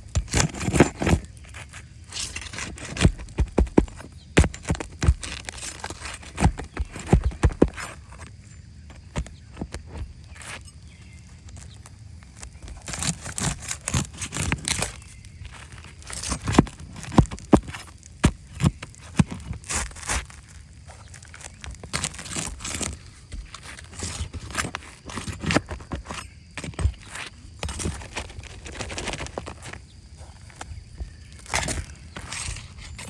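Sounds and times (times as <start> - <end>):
clattering knocks and scrapes: 12.4 - 33.0.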